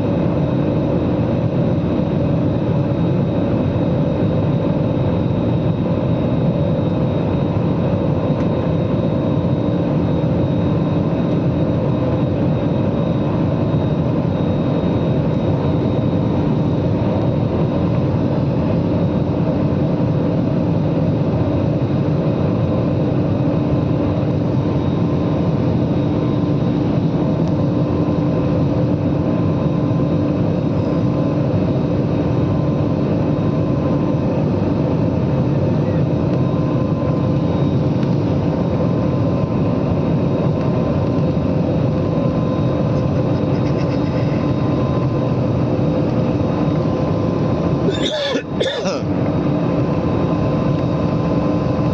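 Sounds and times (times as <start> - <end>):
jet engine and airflow drone: 0.0 - 51.9
steady humming tones: 22.2 - 51.9.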